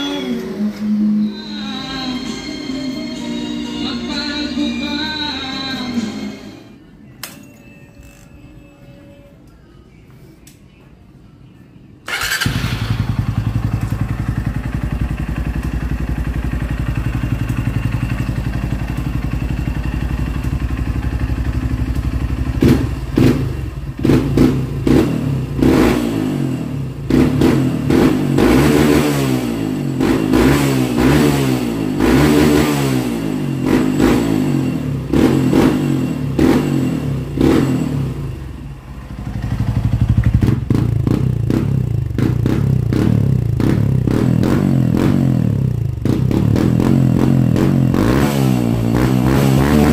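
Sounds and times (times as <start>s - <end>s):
motorcycle engine idling and revving: 12.1s - 49.9s.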